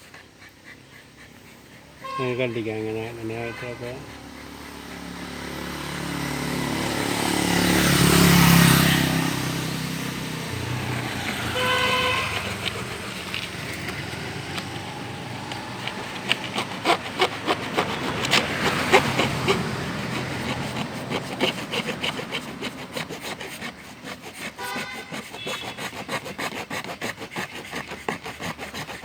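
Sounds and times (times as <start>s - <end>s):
sharp scraping clicks: 0.0s - 29.0s
road vehicle passing: 0.6s - 29.0s
horn toot: 2.0s - 4.0s, 10.3s - 16.8s, 24.6s - 25.9s.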